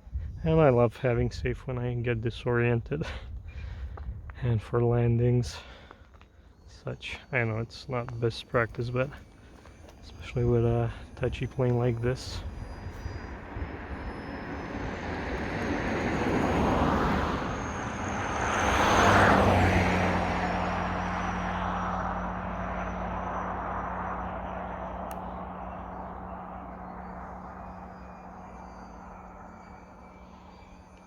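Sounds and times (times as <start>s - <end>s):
model airplane motor buzzing: 6.2s - 31.0s.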